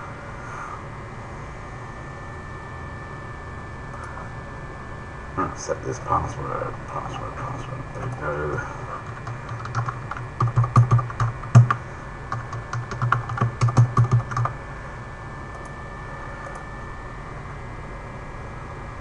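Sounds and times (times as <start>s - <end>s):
typing on a keyboard: 9.0s - 14.5s.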